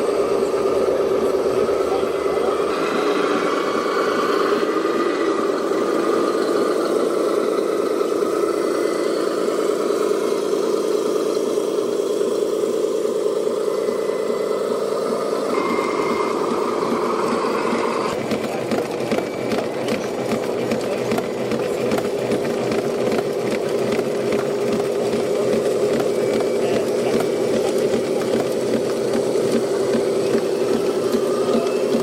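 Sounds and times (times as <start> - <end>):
high motor whine: 0.0 - 32.0
small electric motors whirring: 0.0 - 32.0
gears rattling and clicking: 15.0 - 32.0.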